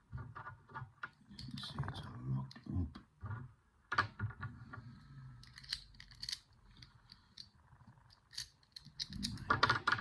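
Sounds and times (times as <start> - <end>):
padlock and picks clicking: 5.4 - 6.5, 8.1 - 9.5.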